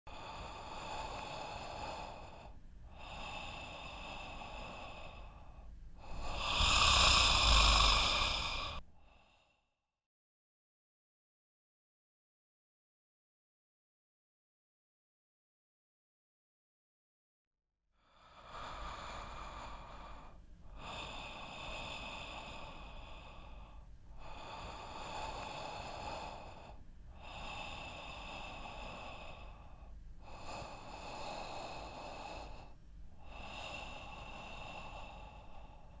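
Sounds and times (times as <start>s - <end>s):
person breathing noisily in sleep: 0.1s - 9.7s, 18.0s - 36.0s.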